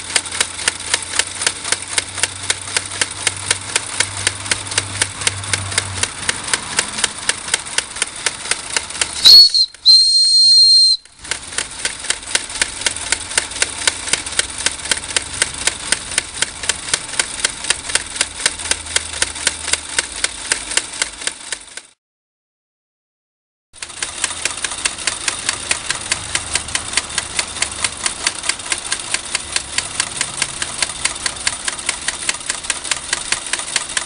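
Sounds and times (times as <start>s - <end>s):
steam engine chuffing: 0.0s - 21.9s, 23.8s - 34.0s
steam whistle: 9.2s - 11.1s.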